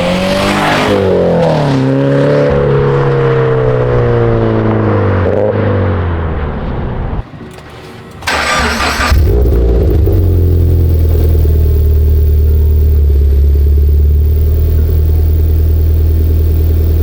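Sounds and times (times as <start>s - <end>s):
car engine idling: 6.0s - 17.0s
starter cranking: 7.4s - 17.0s.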